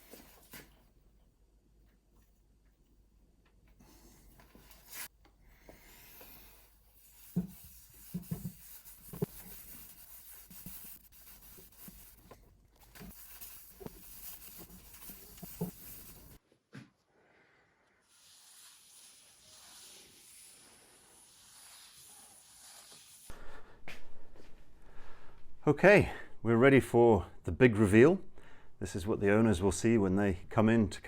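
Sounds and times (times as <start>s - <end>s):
hand rubbing on wooden tabletop: 6.2s - 12.2s, 13.0s - 16.4s.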